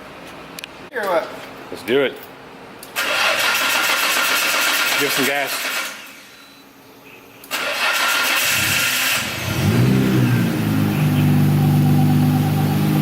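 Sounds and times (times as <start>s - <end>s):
car engine starting and idling: 3.0s - 6.3s, 7.5s - 13.0s.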